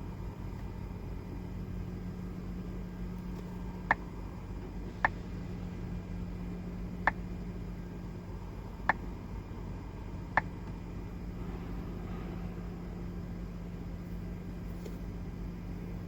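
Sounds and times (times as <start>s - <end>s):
steady low hum: 0.0s - 16.0s
sharp dashboard clicks: 7.0s - 7.4s.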